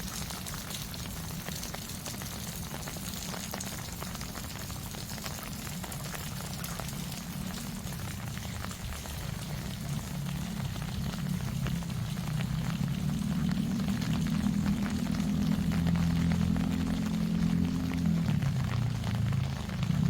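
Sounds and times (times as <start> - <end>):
rain drops tapping: 0.0 - 20.0
low rumble: 7.0 - 20.0.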